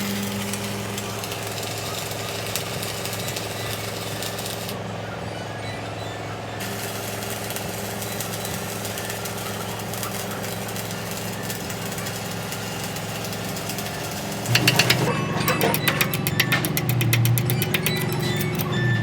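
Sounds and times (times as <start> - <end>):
machine hum: 6.2 - 19.0
sharp clattering clicks: 13.6 - 19.0.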